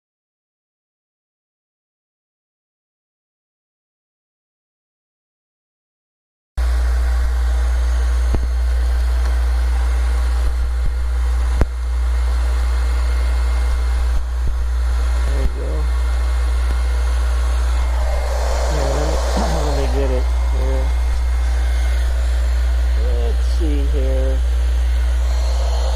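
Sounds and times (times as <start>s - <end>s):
low motor hum: 6.6s - 25.9s
faint voices: 17.8s - 22.0s.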